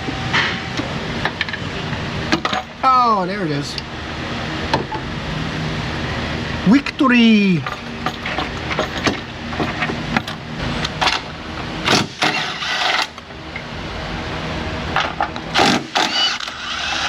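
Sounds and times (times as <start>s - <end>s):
steady mechanical hum: 0.0s - 17.0s
metal clanks of tools: 2.3s - 2.8s, 7.6s - 11.3s.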